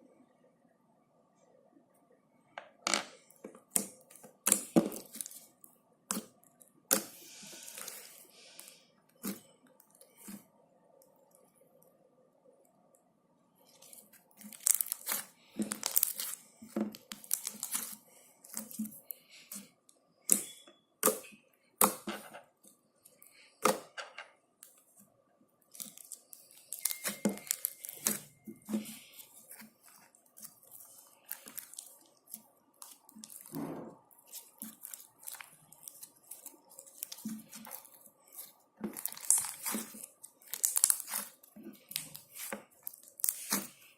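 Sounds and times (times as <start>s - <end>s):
faint steady hum: 0.0s - 43.9s
slime squelching and crackling: 3.6s - 10.5s, 13.6s - 20.5s, 25.6s - 43.9s.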